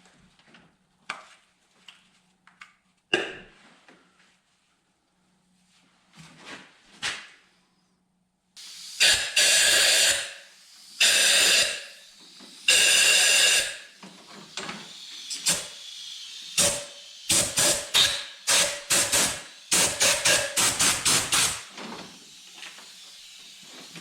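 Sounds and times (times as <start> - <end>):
pressurised spray hissing: 8.6 - 24.0.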